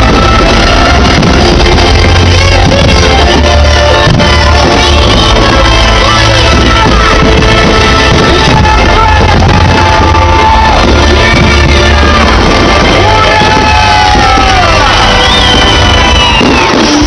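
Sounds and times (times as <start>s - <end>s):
person singing: 0.0s - 15.3s
heavy bass music: 0.0s - 17.0s.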